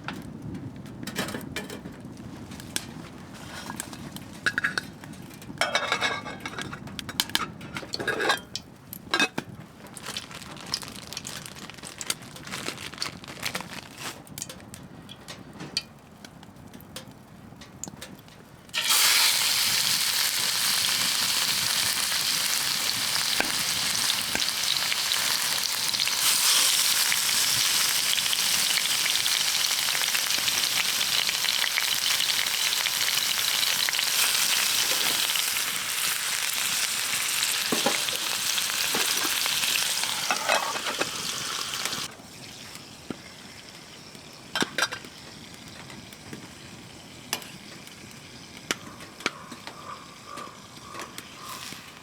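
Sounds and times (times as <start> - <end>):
handling clicks and crinkling: 6.4 - 18.5
meat sizzling in pan: 18.8 - 42.1.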